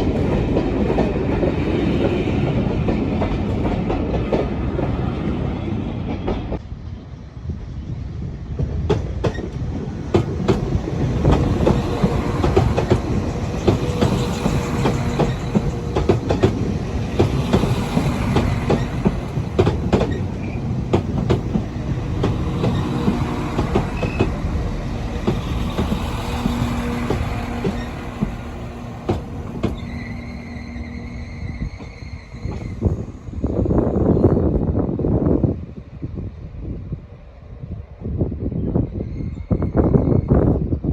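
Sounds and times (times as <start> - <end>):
train wheels clattering over rail joints: 8.6 - 33.0.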